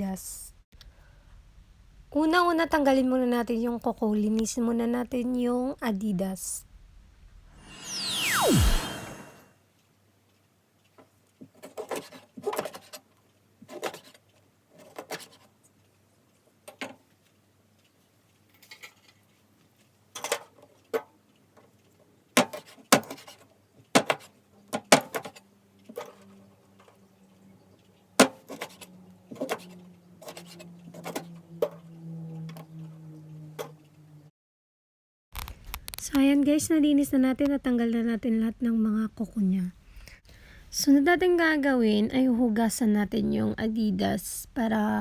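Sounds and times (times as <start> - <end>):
low steady hum: 0.0 - 9.4.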